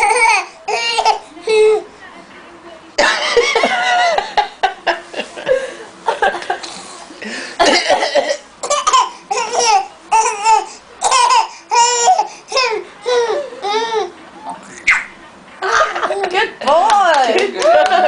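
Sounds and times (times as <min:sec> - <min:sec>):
baby laughing: 0:00.0 - 0:01.8, 0:08.6 - 0:14.1
baby fake coughing: 0:07.6 - 0:12.7.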